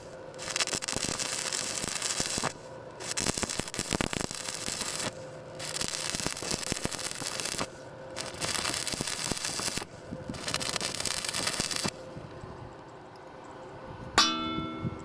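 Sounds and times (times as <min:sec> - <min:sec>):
welding arc crackling: 0:00.0 - 0:12.0.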